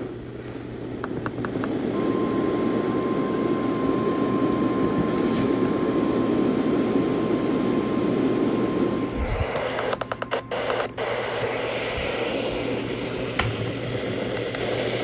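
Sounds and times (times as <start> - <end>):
radio static: 5.9 - 15.0.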